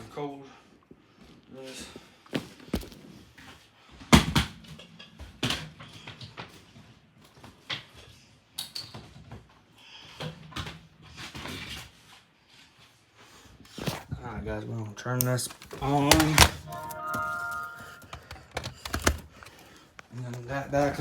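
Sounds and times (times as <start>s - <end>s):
plugs knocking and clicking: 15.2s - 20.6s
cord handling rustle: 15.2s - 21.0s.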